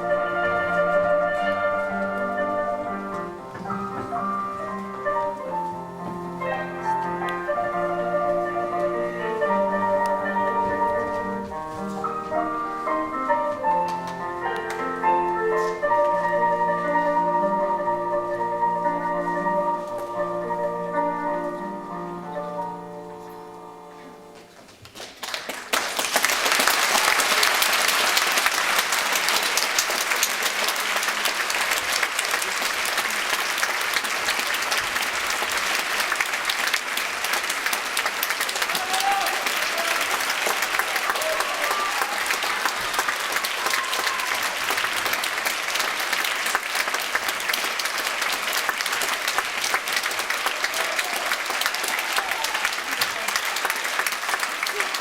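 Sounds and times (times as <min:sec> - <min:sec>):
audience applauding: 0:24.8 - 0:55.0.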